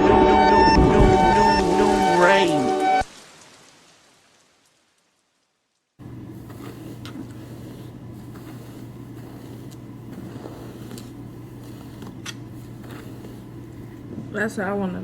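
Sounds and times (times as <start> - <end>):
low hum: 0.0 - 3.1.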